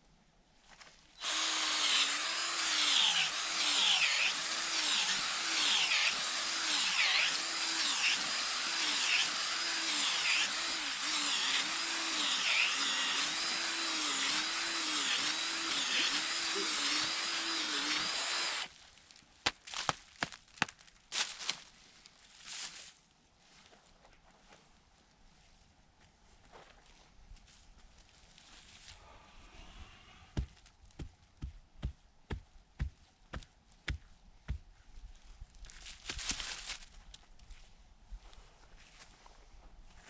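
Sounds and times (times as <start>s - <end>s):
power drill boring into ground: 1.2s - 18.7s.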